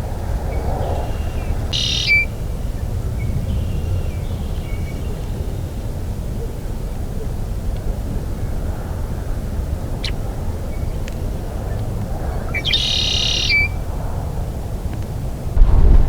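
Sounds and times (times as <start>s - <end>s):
wind rumble on microphone: 0.0s - 12.7s, 13.3s - 16.0s
bird singing trill: 1.2s - 2.3s, 12.6s - 13.8s.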